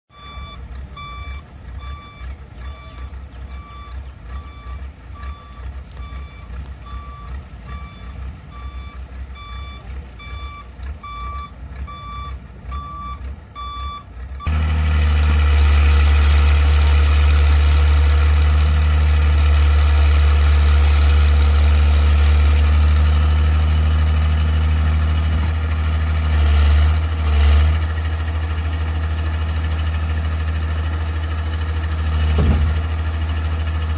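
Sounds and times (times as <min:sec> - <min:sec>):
reversing alarm beeps: 0:00.1 - 0:14.5
diesel engine running: 0:00.1 - 0:33.9.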